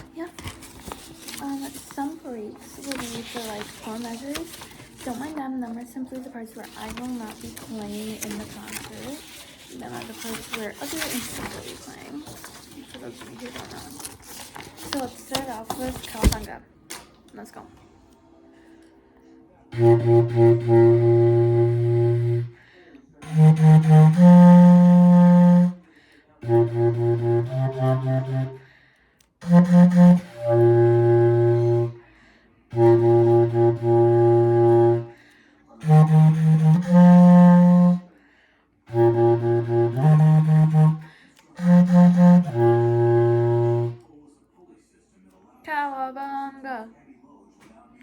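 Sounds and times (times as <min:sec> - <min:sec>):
low wind instrument playing: 0:02.6 - 0:05.2, 0:19.7 - 0:22.6, 0:23.2 - 0:28.7, 0:29.4 - 0:32.0, 0:32.7 - 0:38.1, 0:38.9 - 0:44.0.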